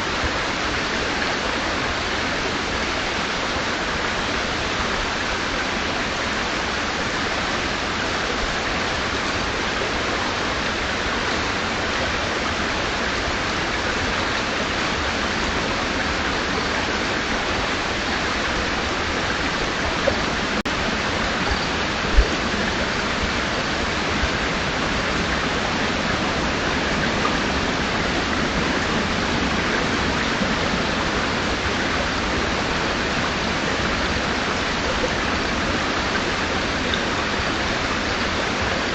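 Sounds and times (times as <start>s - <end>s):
river water rushing: 0.0s - 38.9s.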